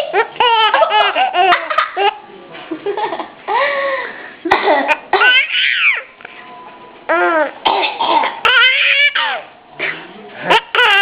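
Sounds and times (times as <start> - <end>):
baby laughing: 0.0 - 2.2, 8.4 - 9.5, 10.5 - 11.0
woman coughing: 4.5 - 5.3, 7.7 - 8.4.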